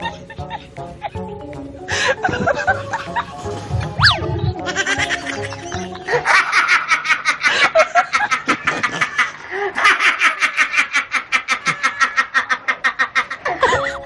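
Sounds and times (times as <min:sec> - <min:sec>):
rapid high-pitched laughter: 0:02.0 - 0:14.0.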